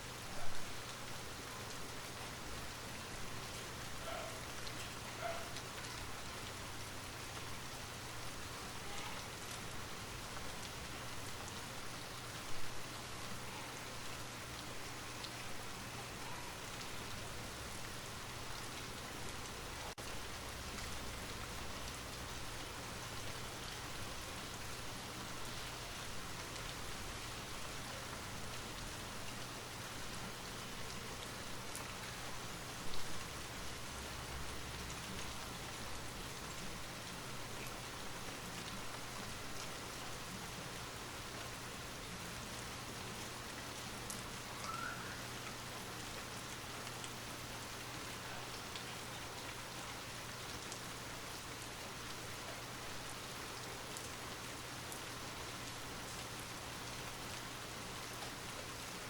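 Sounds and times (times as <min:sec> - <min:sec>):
light rain falling: 0:00.0 - 0:59.0.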